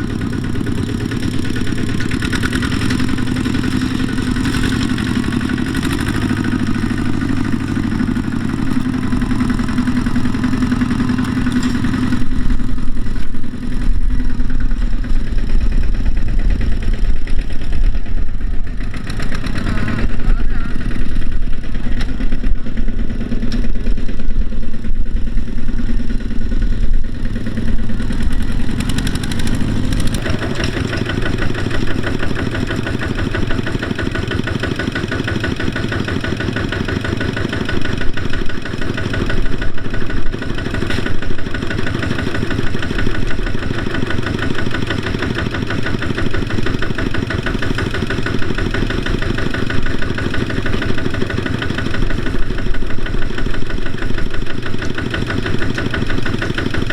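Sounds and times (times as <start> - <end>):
diesel engine running: 0.0 - 56.9.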